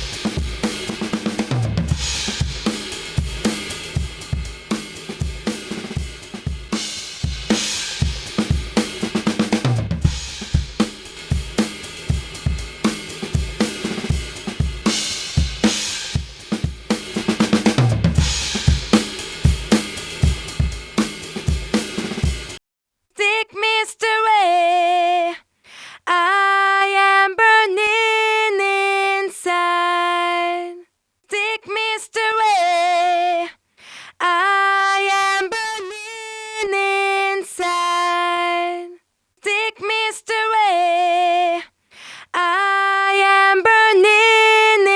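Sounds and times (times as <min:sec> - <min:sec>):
drum kit playing steady beat: 0:00.0 - 0:22.6
solo voice singing with vibrato: 0:23.2 - 0:25.4, 0:26.1 - 0:33.6, 0:34.2 - 0:41.7, 0:42.3 - 0:44.9.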